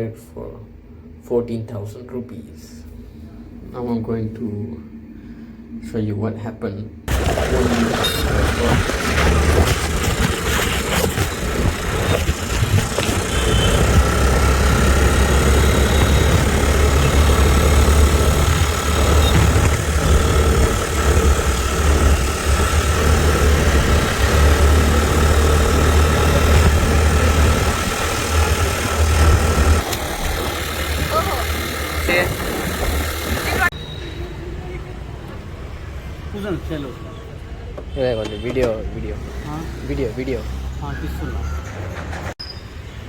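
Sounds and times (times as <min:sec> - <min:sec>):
scooter engine idling: 0:07.1 - 0:33.7
thin engine whine: 0:07.1 - 0:33.7.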